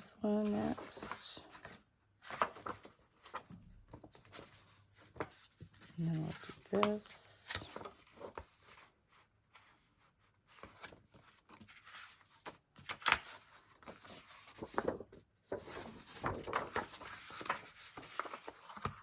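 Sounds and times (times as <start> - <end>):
paper rustling and sliding: 10.5 - 19.0.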